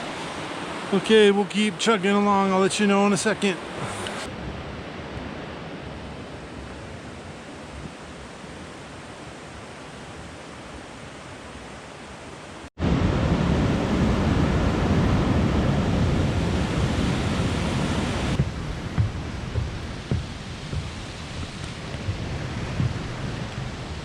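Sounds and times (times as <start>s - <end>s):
river rapids rushing: 0.0s - 4.3s, 16.4s - 24.0s.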